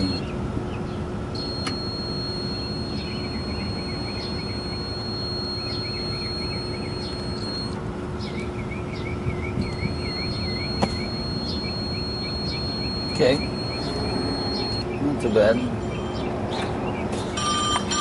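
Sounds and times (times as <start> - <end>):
multimeter continuity beep: 0.0 - 0.2, 1.4 - 7.8, 9.5 - 15.5
low hum: 1.3 - 7.8, 9.6 - 14.8
faint bird chirps: 1.4 - 15.0.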